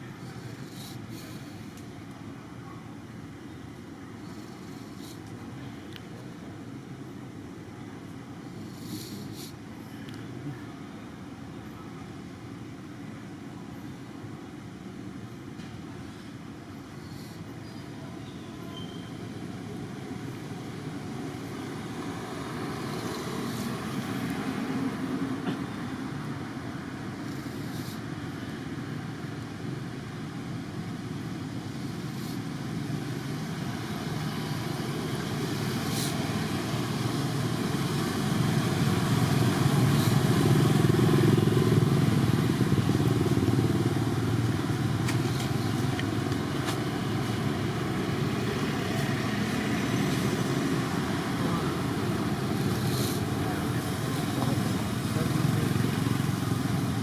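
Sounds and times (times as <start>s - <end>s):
vehicle engine running: 31.6s - 57.0s.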